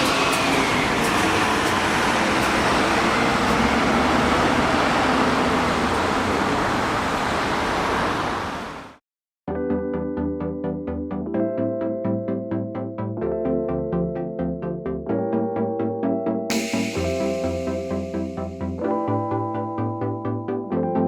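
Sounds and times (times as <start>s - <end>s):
vehicle rolling past: 0.0s - 8.7s.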